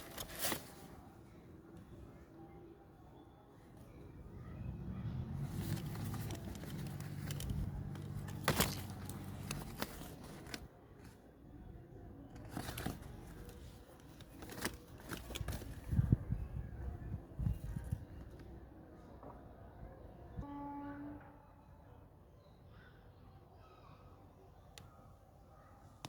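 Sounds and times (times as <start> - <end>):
packaging rustling and crinkling: 0.0 - 1.0, 5.4 - 11.2, 12.3 - 16.1.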